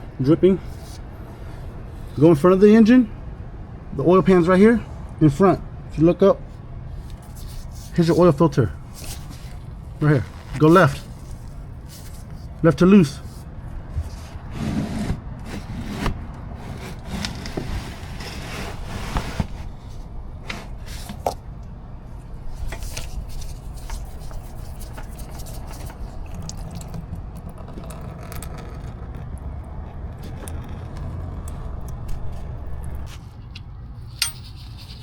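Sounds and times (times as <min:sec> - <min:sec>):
low steady hum: 0:00.0 - 0:35.0
scraping and rubbing: 0:07.0 - 0:21.4, 0:22.4 - 0:35.0.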